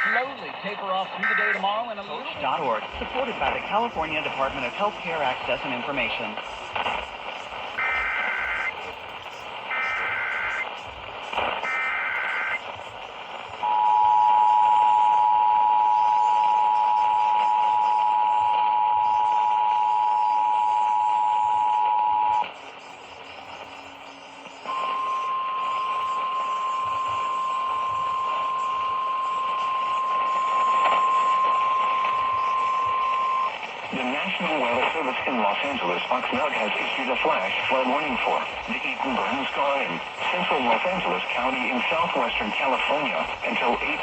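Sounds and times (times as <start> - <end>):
two-tone attention signal: 0.0 - 0.4, 1.2 - 1.6, 7.8 - 8.8, 9.7 - 10.7, 11.6 - 12.6, 24.7 - 33.5
warbling data header bursts: 0.0 - 13.6
radio hiss: 0.0 - 44.0.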